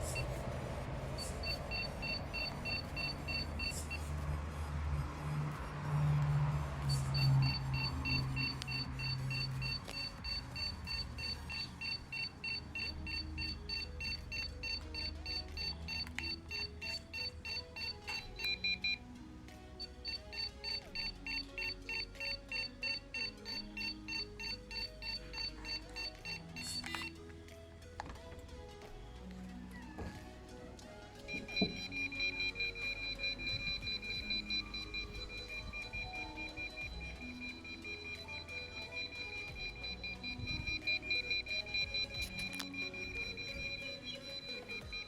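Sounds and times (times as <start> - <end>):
background music: 0.0 - 45.0
electronic buzzer beeping rapidly: 1.2 - 4.0, 7.1 - 19.0, 20.0 - 27.1, 31.3 - 45.0
steady lower buzzer tone: 1.2 - 4.0, 6.0 - 19.0, 31.3 - 45.0.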